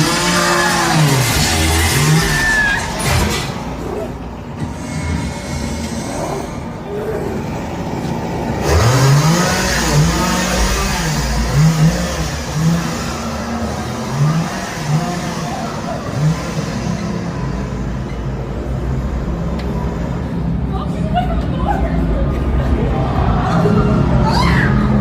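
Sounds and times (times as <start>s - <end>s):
chainsaw revving: 0.0s - 3.6s, 8.5s - 17.8s
steady noisy background: 0.0s - 25.0s.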